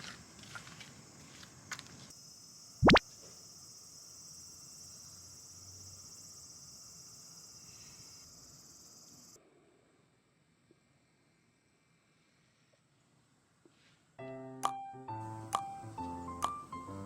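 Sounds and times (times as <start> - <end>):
cicadas droning: 0.0 - 9.4.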